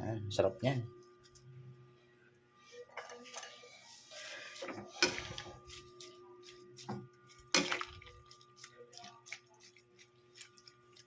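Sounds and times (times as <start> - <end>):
faint liquid sounds: 2.6 - 11.0.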